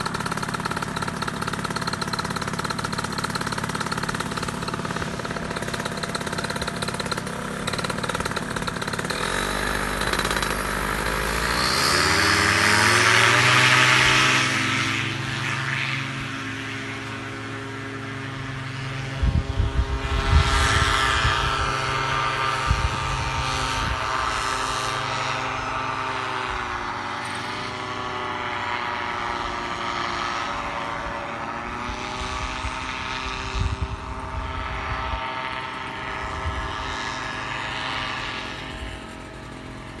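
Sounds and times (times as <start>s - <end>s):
paramotor engine and propeller: 0.0s - 40.0s
wind buffeting microphone: 19.1s - 24.3s, 32.2s - 35.3s.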